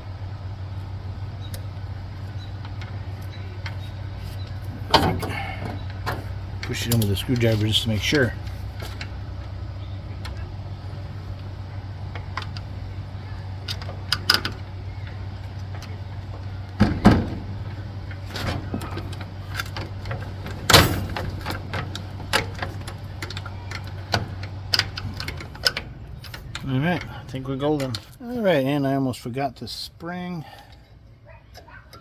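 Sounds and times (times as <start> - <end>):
steady low hum: 0.0 - 31.5
loud knocks: 16.8 - 18.9
metal clicks and taps of tools: 21.4 - 26.7.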